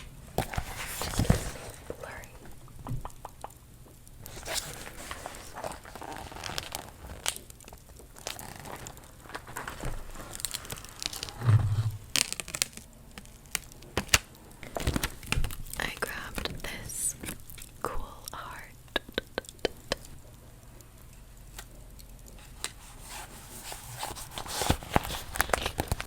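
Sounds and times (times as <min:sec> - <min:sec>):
dull thump: 0:11.4 - 0:12.1.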